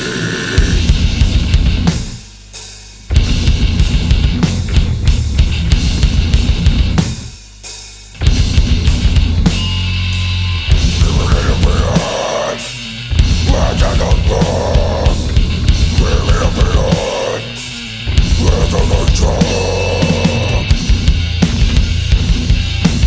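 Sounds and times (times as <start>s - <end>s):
heavy metal band playing: 0.0s - 2.4s, 3.1s - 7.4s, 8.1s - 23.0s
fast kick drum: 0.7s - 1.9s, 3.1s - 7.2s, 8.2s - 9.5s.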